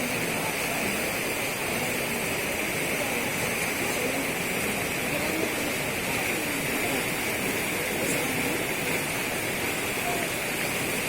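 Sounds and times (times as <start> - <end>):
faint voices: 0.0 - 11.0
floodwater rushing: 0.0 - 11.0.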